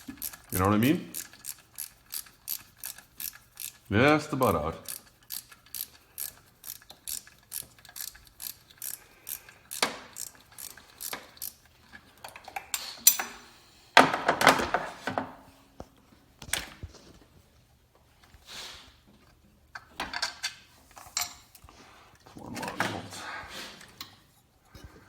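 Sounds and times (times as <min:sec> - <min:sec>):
socket ratchet clicking: 0:00.0 - 0:11.6.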